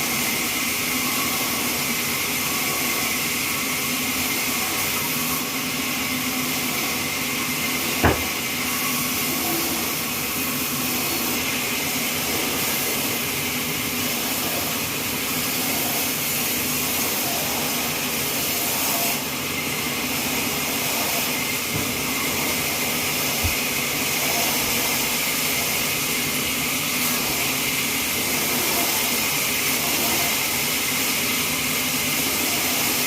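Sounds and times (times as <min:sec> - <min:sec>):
band saw running: 0:00.0 - 0:33.0
sharp knock: 0:08.0 - 0:08.4.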